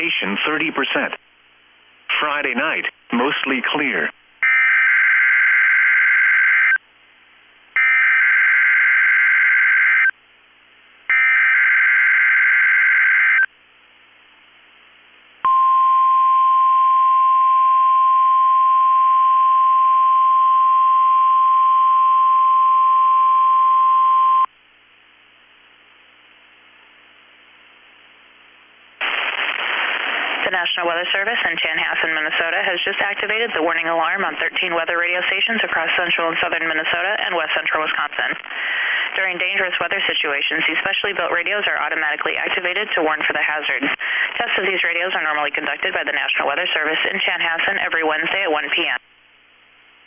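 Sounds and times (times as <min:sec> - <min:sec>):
steady warning alarm tone: 0:04.4 - 0:06.8, 0:07.8 - 0:10.1, 0:11.1 - 0:13.5.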